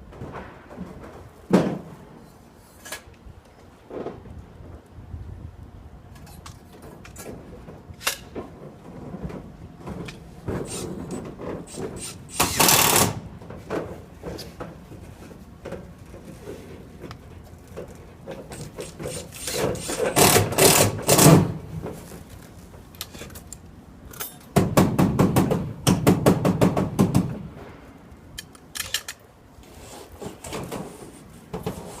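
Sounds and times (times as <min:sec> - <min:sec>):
power tool rattling: 0:10.5 - 0:13.2, 0:18.4 - 0:21.6.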